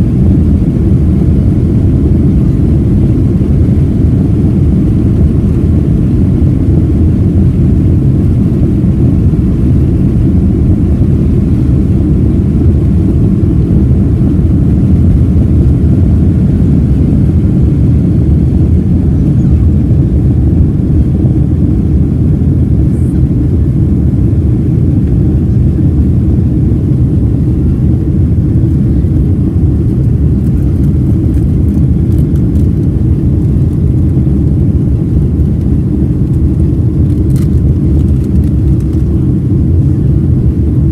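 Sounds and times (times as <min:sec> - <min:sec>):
jet engines rumbling in cabin: 0:00.0 - 0:40.9.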